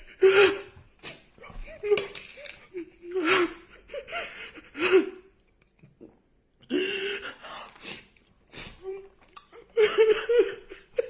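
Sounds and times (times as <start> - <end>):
person wailing sobs: 0.0 - 5.3.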